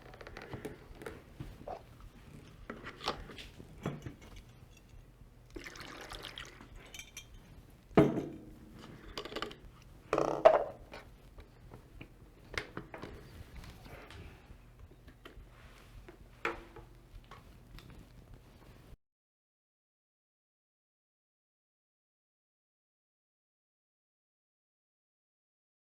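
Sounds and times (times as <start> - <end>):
water pouring through funnel: 5.5 - 7.2.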